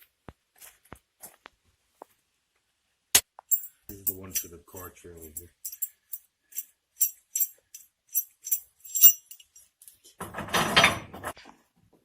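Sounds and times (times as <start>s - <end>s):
small metal pieces jingling: 3.5s - 9.7s.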